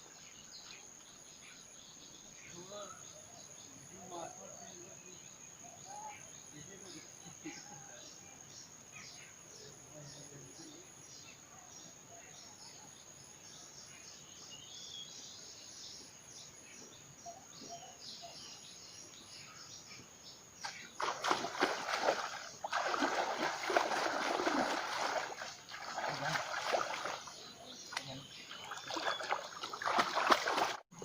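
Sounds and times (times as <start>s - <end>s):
water splashing and sloshing: 20.7s - 30.8s.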